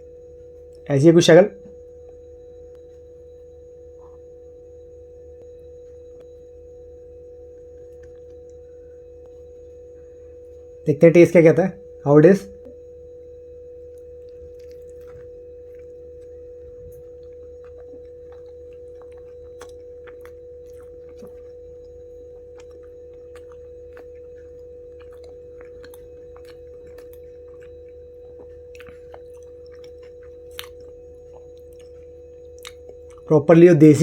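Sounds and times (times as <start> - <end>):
steady hum: 0.0 - 34.0
chewing crunches and mouth clicks: 7.4 - 10.8, 13.7 - 33.8.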